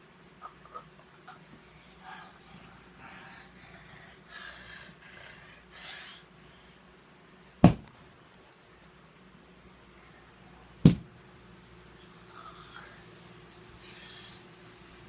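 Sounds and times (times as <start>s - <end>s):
person breathing hard and snorting: 0.4s - 6.9s.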